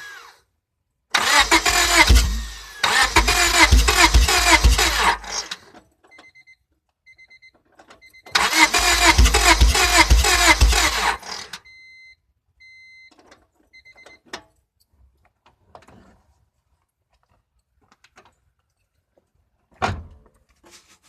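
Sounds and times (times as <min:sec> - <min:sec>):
car engine cranking: 0:01.1 - 0:05.6, 0:08.3 - 0:11.6.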